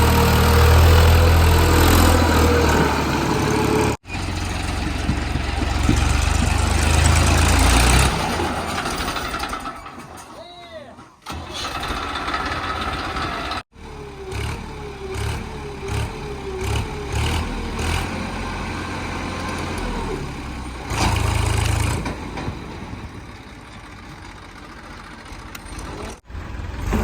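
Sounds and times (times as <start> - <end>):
heavy diesel engine rumbling: 0.0 - 27.0.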